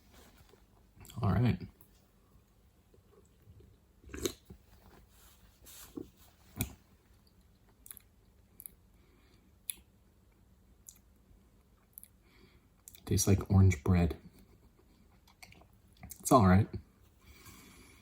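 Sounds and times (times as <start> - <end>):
person sipping a drink: 4.0 - 4.6.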